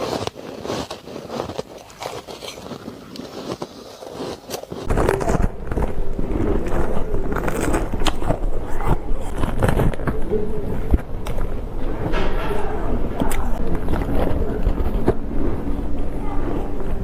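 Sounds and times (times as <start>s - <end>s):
person chewing ice: 0.0s - 17.0s.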